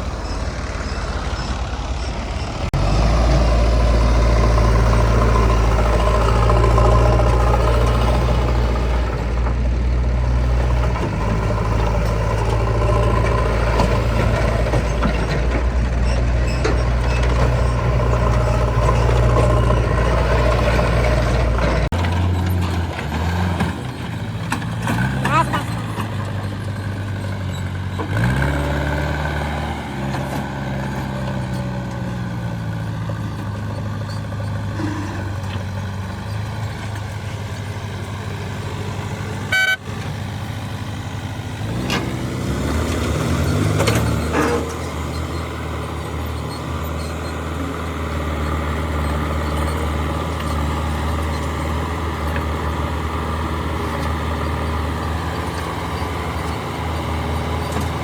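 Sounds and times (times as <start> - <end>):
diesel machinery engines: 0.0 - 58.0
short high beep: 39.5 - 39.8.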